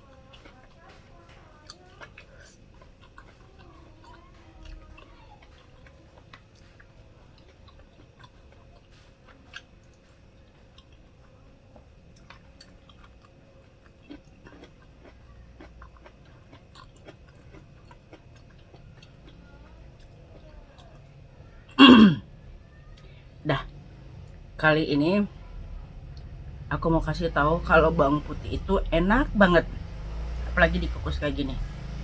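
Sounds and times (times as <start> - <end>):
person chewing food: 0.0 - 21.2.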